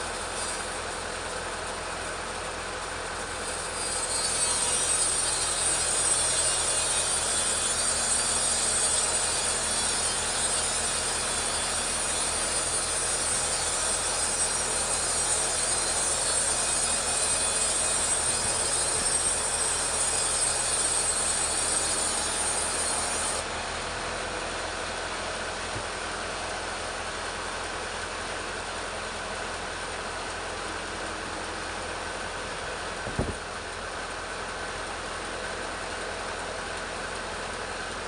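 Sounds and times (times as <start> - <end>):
chainsaw cutting through log: 3.3 - 23.4.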